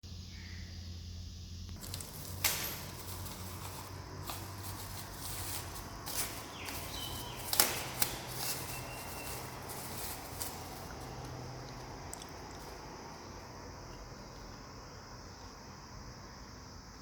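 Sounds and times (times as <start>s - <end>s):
handling clicks and knocks: 1.8s - 12.7s.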